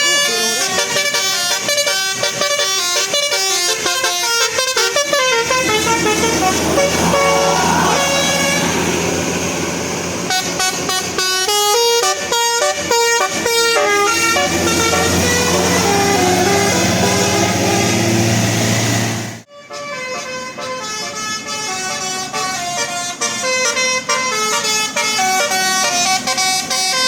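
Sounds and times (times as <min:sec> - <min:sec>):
bus air horn melody: 0:00.0 - 0:18.3, 0:19.5 - 0:27.0
bus engine hum: 0:00.1 - 0:19.5.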